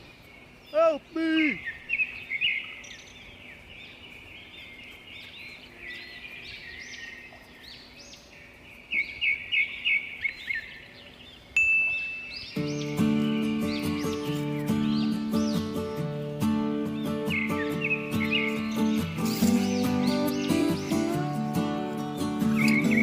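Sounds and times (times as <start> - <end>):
small birds chirping: 0.0 - 23.0
music: 12.6 - 23.0.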